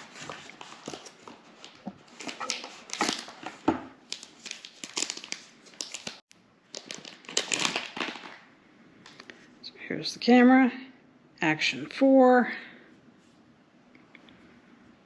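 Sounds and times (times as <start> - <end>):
plastic and cardboard crinkling: 0.0 - 8.4.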